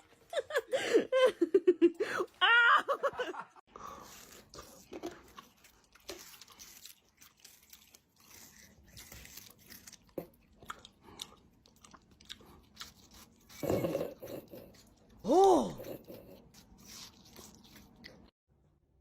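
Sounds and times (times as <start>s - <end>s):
crunchy chewing: 3.8s - 18.3s.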